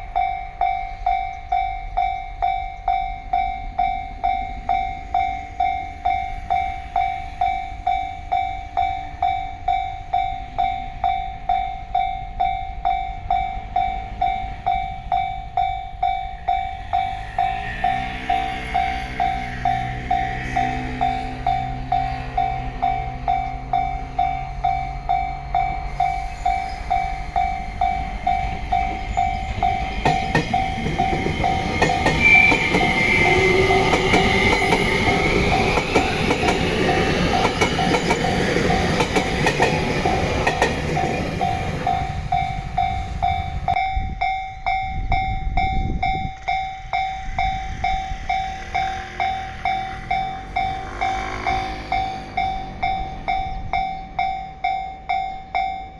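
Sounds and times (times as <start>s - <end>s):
train rumble: 0.0s - 55.9s
train wheels clattering over joints: 25.9s - 43.7s.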